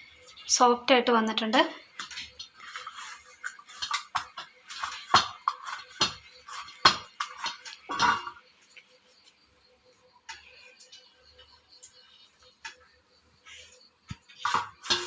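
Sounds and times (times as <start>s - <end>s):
dough thumping in a bowl: 3.6s - 8.4s.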